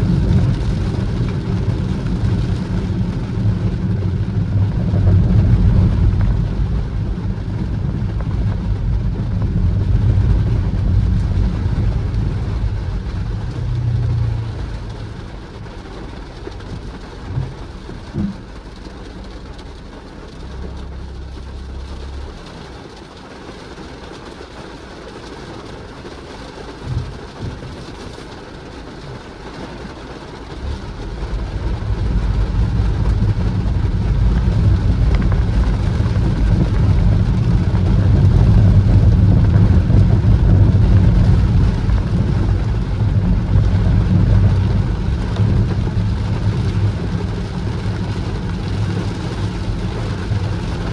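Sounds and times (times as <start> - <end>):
car engine and tyre rumble: 0.0 - 50.9.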